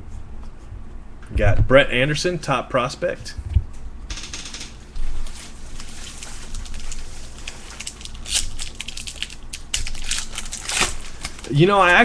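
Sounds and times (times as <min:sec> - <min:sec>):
card packaging rustling: 0:05.1 - 0:12.0.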